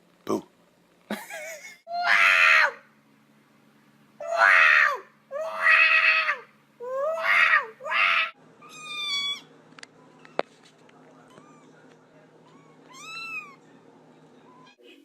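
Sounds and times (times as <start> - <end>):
cat meowing: 7.2 - 9.5, 12.4 - 13.6.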